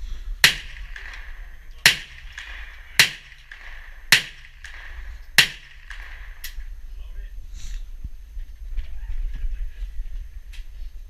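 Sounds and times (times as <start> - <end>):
gunshots: 0.4 - 6.7.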